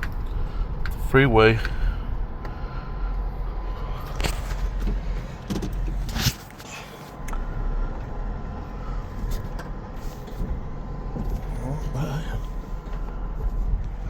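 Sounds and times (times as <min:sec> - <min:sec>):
truck engine and road rumble: 0:00.0 - 0:14.0.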